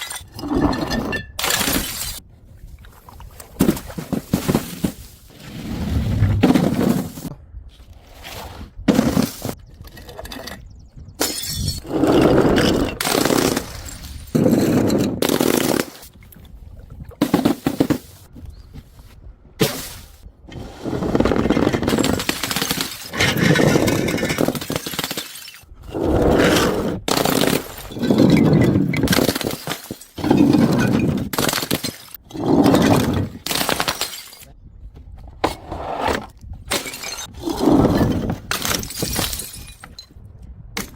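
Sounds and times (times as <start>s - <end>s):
objects smashing and crunching: 21.2s - 25.7s, 27.0s - 34.5s.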